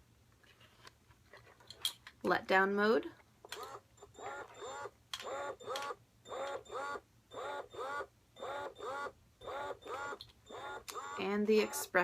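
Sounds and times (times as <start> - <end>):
electric breast pump whining: 3.5 - 12.0.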